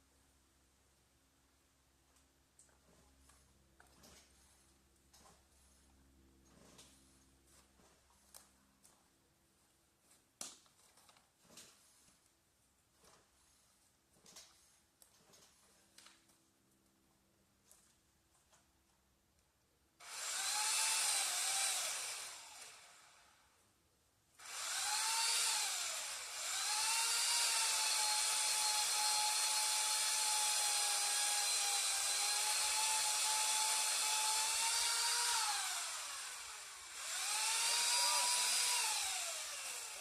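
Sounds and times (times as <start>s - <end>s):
power tool motor whining: 20.0s - 23.4s, 24.4s - 40.0s.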